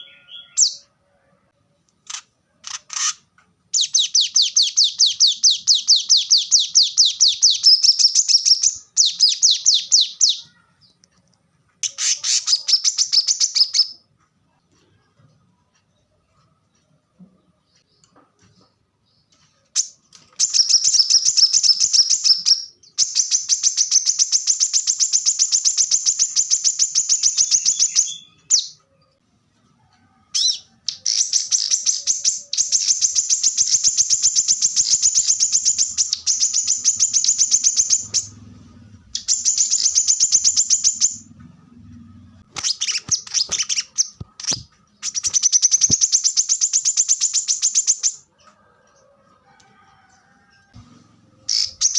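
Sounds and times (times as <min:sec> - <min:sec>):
bird singing rapid chipping notes: 0:19.2 - 0:28.8, 0:30.4 - 0:38.5, 0:39.1 - 0:41.3, 0:42.5 - 0:48.2, 0:51.4 - 0:51.9.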